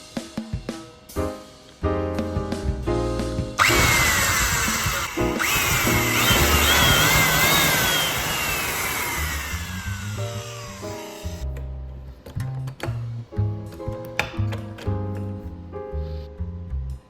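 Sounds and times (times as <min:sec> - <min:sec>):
background music: 0:00.0 - 0:17.0
power drill boring into wood: 0:03.6 - 0:11.4.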